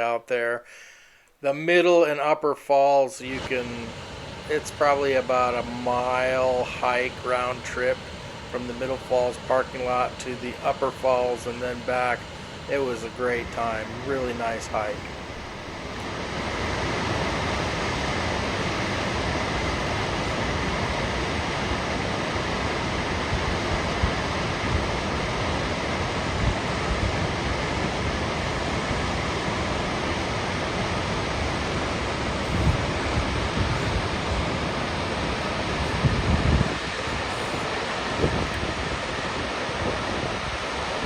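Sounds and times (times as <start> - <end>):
waterfall rushing: 3.3 - 41.0
wind buffeting microphone: 23.1 - 41.0.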